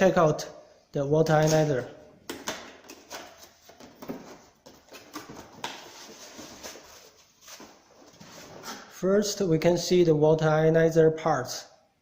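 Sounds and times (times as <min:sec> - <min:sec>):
packaging rustling: 0:02.4 - 0:08.9.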